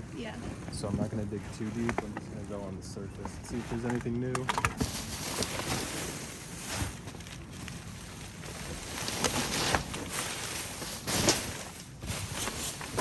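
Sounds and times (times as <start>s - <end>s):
wind buffeting microphone: 0.0s - 5.2s
trash rustling and knocking: 3.2s - 13.0s.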